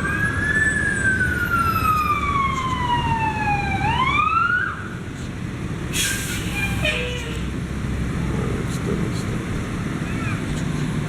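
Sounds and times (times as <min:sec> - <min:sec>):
emergency vehicle siren wailing: 0:00.0 - 0:05.1
low rumble of traffic: 0:00.0 - 0:11.0.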